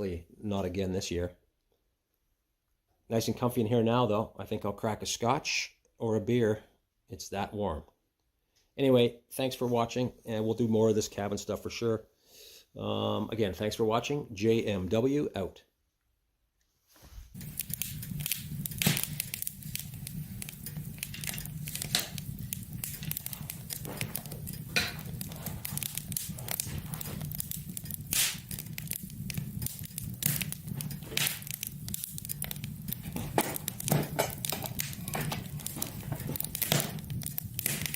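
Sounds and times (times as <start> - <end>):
wood fire crackling: 17.3 - 37.9.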